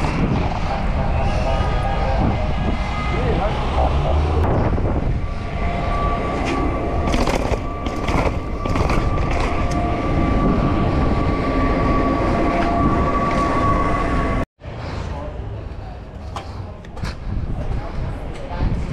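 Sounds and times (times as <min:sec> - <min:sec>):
high-pitched squeal: 0:00.0 - 0:14.5
wind rushing over microphone: 0:00.0 - 0:14.8, 0:15.5 - 0:18.9
bike rattling over bumps: 0:07.0 - 0:09.9.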